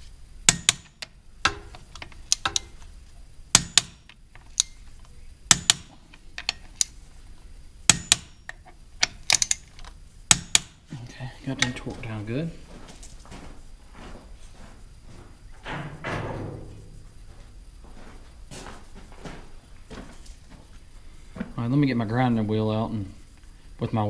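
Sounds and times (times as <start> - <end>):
torque wrench clicking: 0.5 - 2.9, 3.6 - 4.8, 5.5 - 7.0, 7.9 - 10.8.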